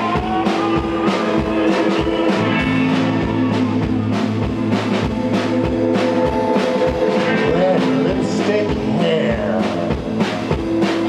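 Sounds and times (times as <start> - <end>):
drum kit beat: 0.0 - 11.0
sustained guitar chords: 0.0 - 11.0
person singing: 5.1 - 10.5.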